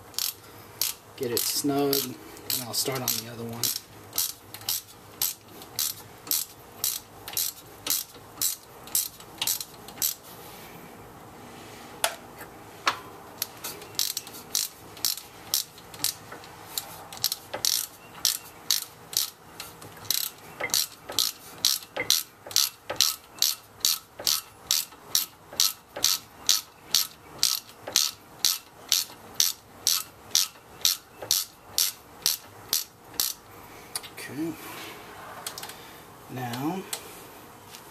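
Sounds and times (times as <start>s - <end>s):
ratchet clicking: 0.1s - 10.2s, 13.4s - 33.4s.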